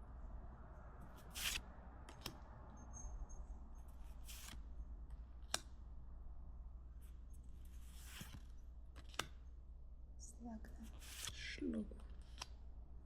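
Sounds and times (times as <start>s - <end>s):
cards rustling: 1.0s - 2.4s, 3.9s - 4.6s, 7.0s - 9.4s, 10.8s - 12.6s.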